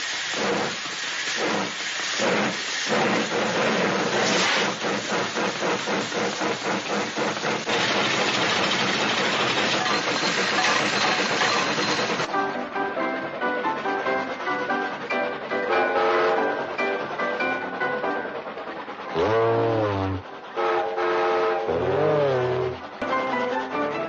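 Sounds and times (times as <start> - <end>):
steady steam hiss: 0.0 - 12.2
steam train chuffing effect: 0.0 - 24.0.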